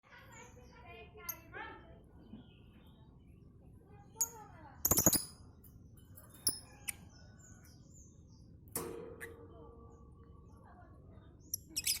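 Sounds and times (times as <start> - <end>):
lovebirds chirping: 0.1 - 8.6, 9.5 - 12.0
ringing knock: 8.8 - 10.2.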